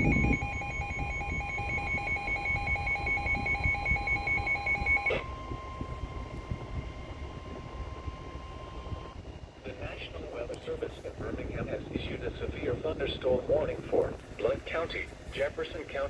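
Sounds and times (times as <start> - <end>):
rapid pulsing alarm beep: 0.0 - 9.6
steady single-pitch alarm tone: 0.0 - 9.6.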